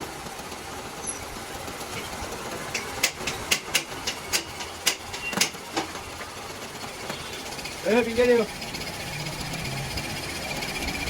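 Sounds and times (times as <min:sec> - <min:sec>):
workshop machinery hum: 0:00.0 - 0:11.0
sharp metallic knocks: 0:02.7 - 0:06.0.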